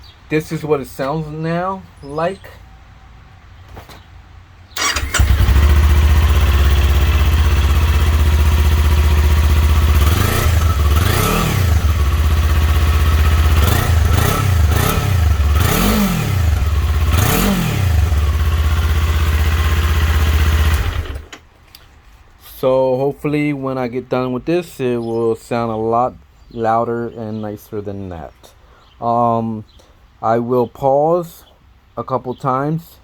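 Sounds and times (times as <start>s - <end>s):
motorcycle engine idling and revving: 4.8s - 21.4s.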